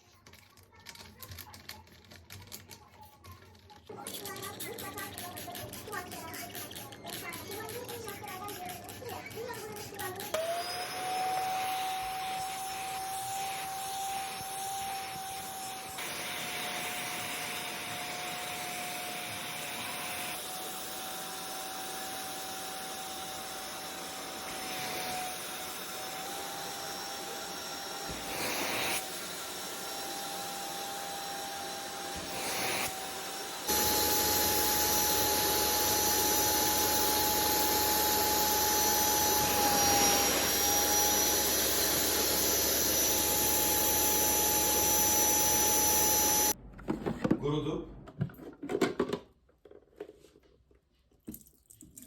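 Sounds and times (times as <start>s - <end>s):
suction motor whine: 10.2s - 46.6s.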